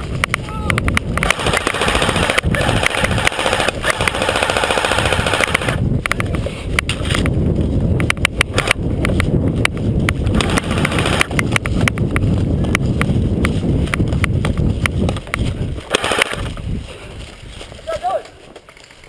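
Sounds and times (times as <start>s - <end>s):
airsoft rifle full-auto burst: 1.2s - 5.8s, 15.9s - 16.4s
heavy running footsteps: 5.8s - 19.0s.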